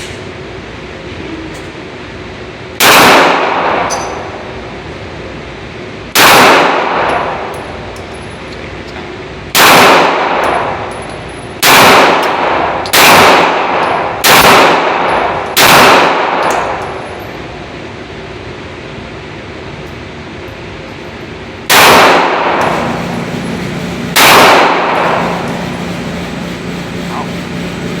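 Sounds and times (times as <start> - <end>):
gunshots: 2.8 - 3.9, 6.2 - 7.4, 9.6 - 10.8, 11.6 - 16.8, 21.7 - 28.0.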